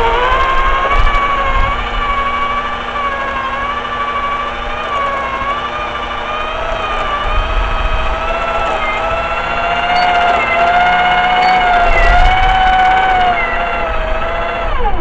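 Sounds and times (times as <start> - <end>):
electric drill whining under load: 0.0 - 15.0.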